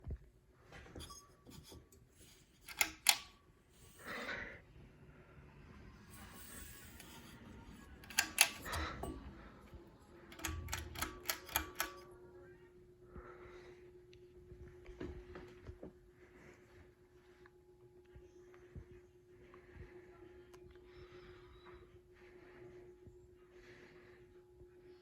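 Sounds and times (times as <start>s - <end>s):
ceiling fan clicks and rattles: 0.0s - 12.5s
faint motor hum: 0.0s - 25.0s.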